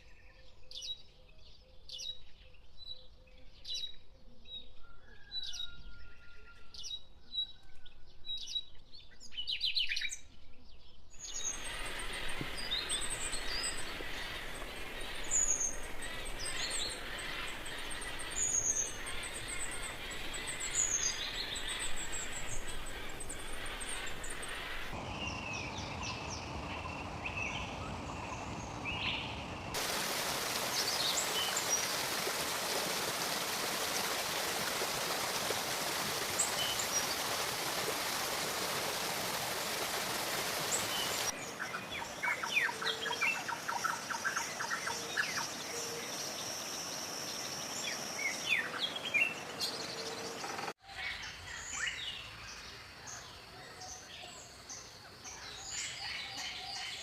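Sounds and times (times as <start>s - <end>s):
steady hiss: 11.2s - 25.4s, 29.7s - 41.4s.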